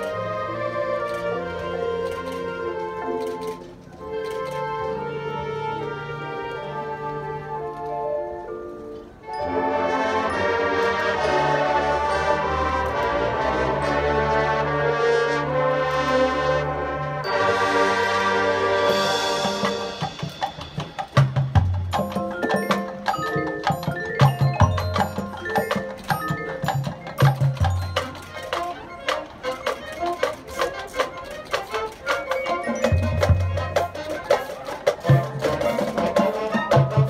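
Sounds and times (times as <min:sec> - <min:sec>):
brass and wind chords: 0:00.0 - 0:21.0
percussion hits: 0:18.9 - 0:37.0.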